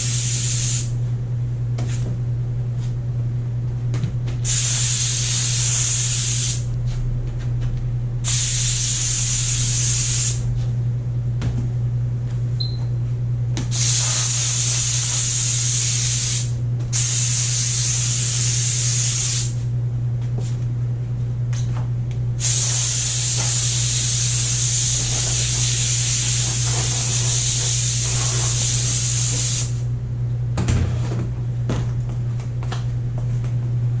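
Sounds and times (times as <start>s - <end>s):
steam cleaner hissing: 0.0s - 0.9s, 4.4s - 6.7s, 8.2s - 10.4s, 13.7s - 19.6s, 22.4s - 29.8s
low hum: 6.6s - 9.8s.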